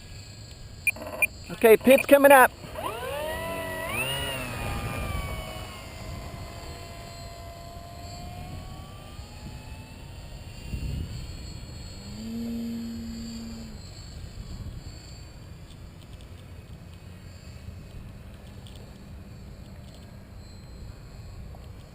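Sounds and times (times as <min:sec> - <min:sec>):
low steady hum: 0:00.0 - 0:21.9
model plane electric motor whining: 0:00.4 - 0:21.9
wind rumble on microphone: 0:03.4 - 0:16.8.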